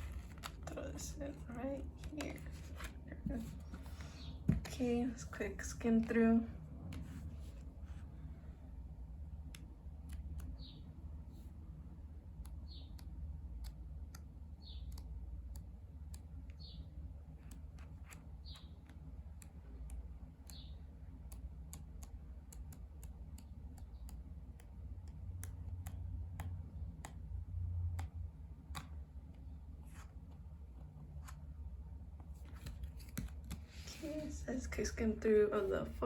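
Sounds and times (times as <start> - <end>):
photo book pages flipping: 0.0 - 1.4, 2.0 - 4.7, 32.3 - 34.3.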